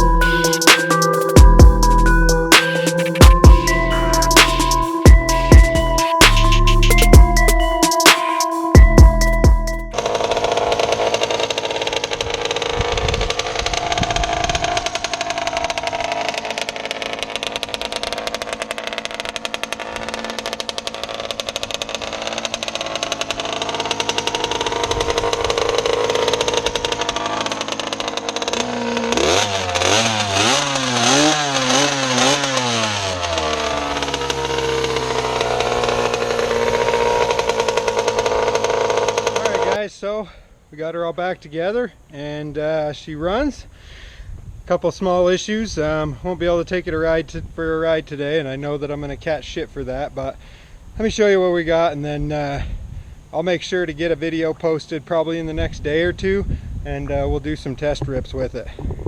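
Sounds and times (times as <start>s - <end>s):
small engine running and revving: 9.9s - 39.8s.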